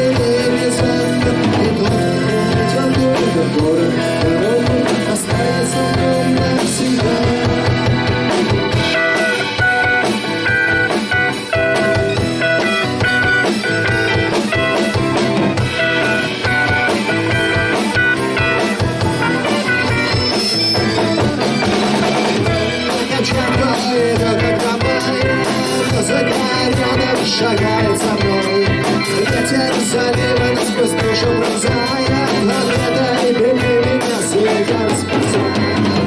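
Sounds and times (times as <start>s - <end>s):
drum kit steady beat: 0.0s - 36.0s
rock band playing: 0.0s - 36.0s.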